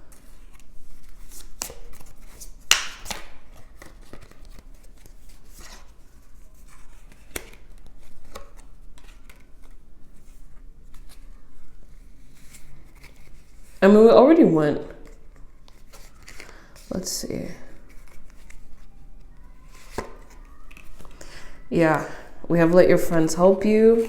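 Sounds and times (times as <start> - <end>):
cards being shuffled: 0.1 - 11.4, 12.2 - 13.8, 15.0 - 17.0, 17.8 - 21.2.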